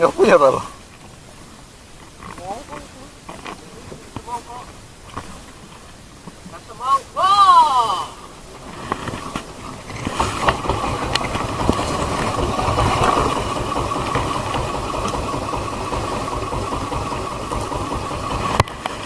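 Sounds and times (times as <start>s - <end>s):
boat engine running: 8.2s - 19.0s.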